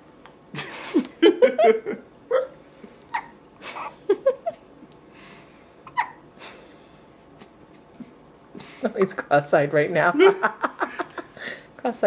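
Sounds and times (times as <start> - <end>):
baby hiccuping with squeaks: 2.4 - 3.9, 5.8 - 6.2
soft breathing: 5.0 - 5.8, 6.4 - 7.6, 11.2 - 11.8.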